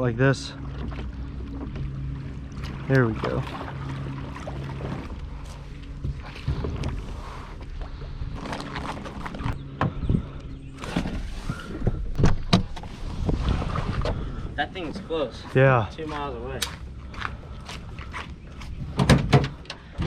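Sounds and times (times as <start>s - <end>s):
water splashing: 0.0s - 9.6s.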